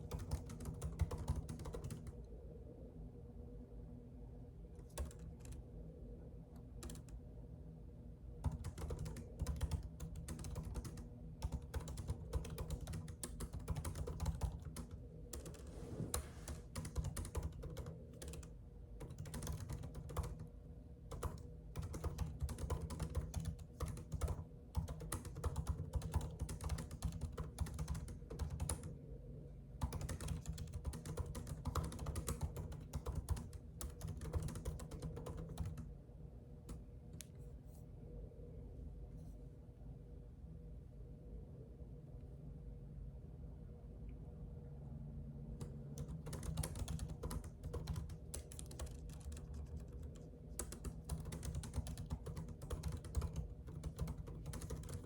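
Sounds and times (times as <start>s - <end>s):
keyboard typing: 0.0s - 2.2s, 4.8s - 5.6s, 6.8s - 7.2s, 8.4s - 20.5s, 21.1s - 28.9s, 29.8s - 35.9s, 46.0s - 55.0s
low steady hum: 0.0s - 55.0s.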